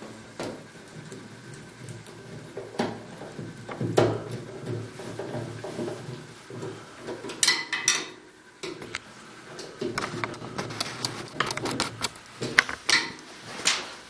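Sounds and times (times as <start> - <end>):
clicks and knocks of tool on metal: 7.3 - 8.9, 12.4 - 13.2.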